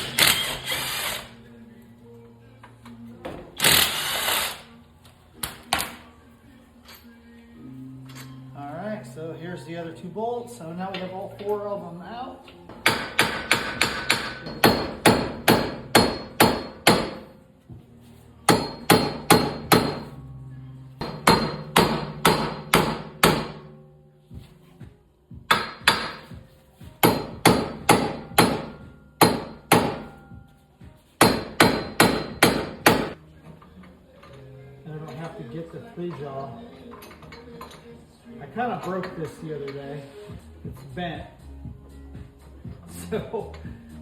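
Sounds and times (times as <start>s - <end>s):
hammer ringing on steel: 12.8s - 17.2s, 18.5s - 20.1s, 21.0s - 24.0s, 27.0s - 30.6s.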